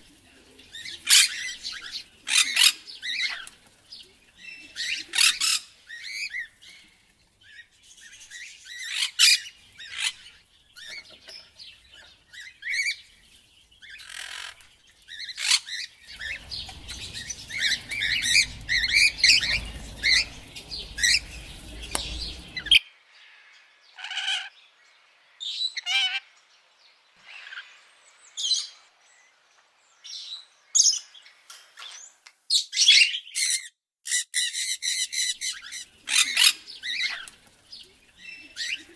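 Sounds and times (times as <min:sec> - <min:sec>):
parrot squawking and chirping: 0:01.0 - 0:03.5, 0:04.8 - 0:06.5, 0:08.3 - 0:11.1, 0:13.9 - 0:22.8, 0:32.6 - 0:37.4
low rumbling noise: 0:16.0 - 0:22.8.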